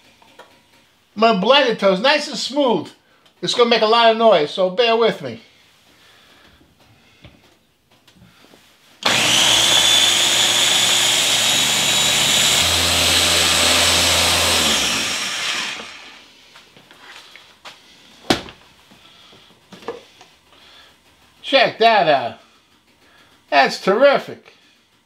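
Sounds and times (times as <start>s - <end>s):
food processor motor running: 9.0s - 16.2s.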